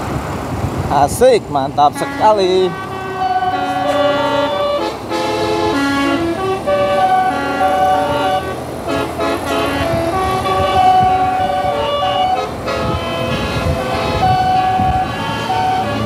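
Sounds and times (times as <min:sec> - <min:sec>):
multi-tone bus horn tune: 0:01.8 - 0:16.0.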